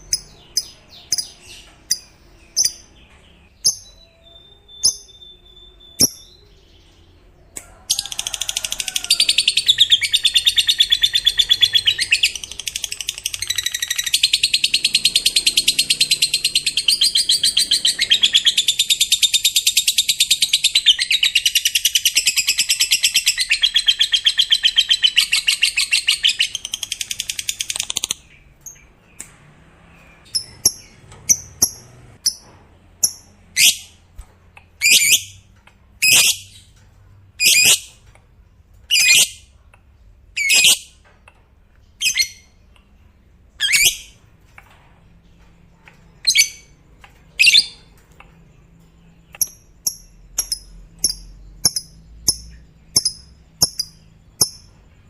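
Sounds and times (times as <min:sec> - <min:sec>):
lovebird chattering trill and calls: 0:38.9 - 0:39.5, 0:40.4 - 0:41.0, 0:49.2 - 0:54.7.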